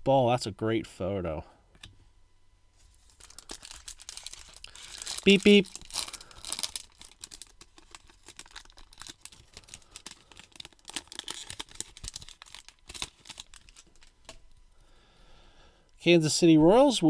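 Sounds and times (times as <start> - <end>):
wrapper tearing and crinkling: 2.9 - 14.4.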